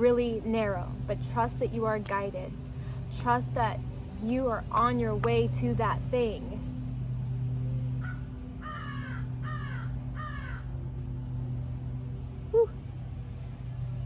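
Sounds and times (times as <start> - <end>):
steady low hum: 0.0 - 14.0
crow cawing: 8.0 - 10.7.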